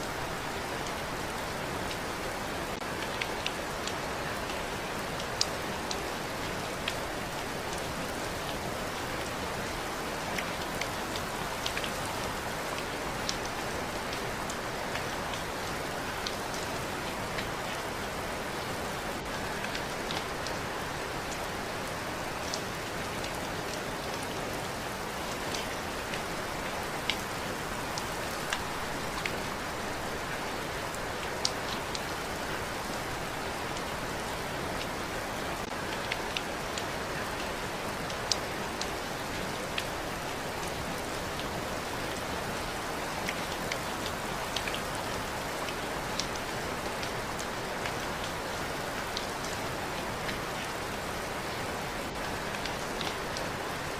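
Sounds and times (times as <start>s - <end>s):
steady rain hiss: 0.0s - 53.9s
raindrop ticks: 10.0s - 18.2s, 25.3s - 32.2s, 33.5s - 49.6s.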